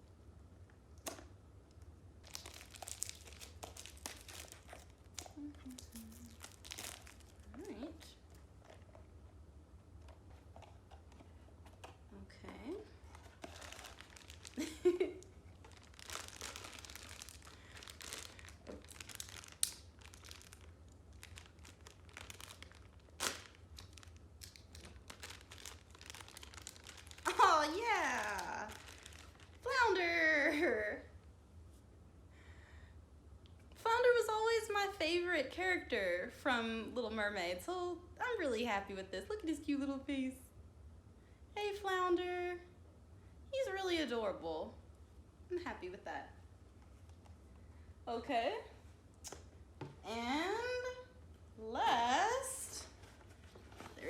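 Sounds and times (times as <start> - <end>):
packaging crinkling and tearing: 2.2 - 9.0, 12.8 - 30.0.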